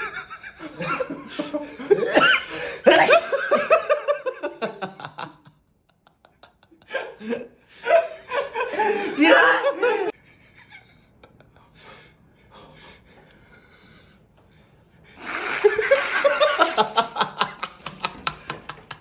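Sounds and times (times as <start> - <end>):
person gasping: 8.7 - 10.1
person laughing: 15.2 - 19.0.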